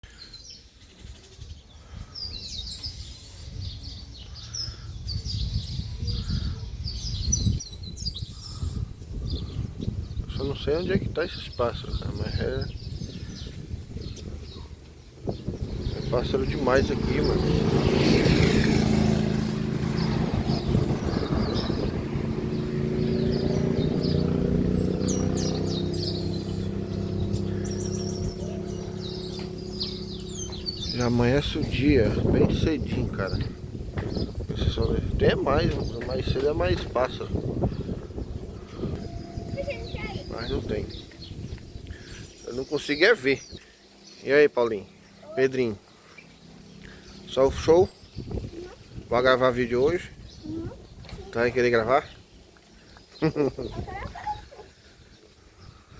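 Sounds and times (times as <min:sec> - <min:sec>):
many birds chirping: 0:00.0 - 0:55.9
low rumble: 0:12.8 - 0:42.4
low motor hum: 0:12.8 - 0:42.6.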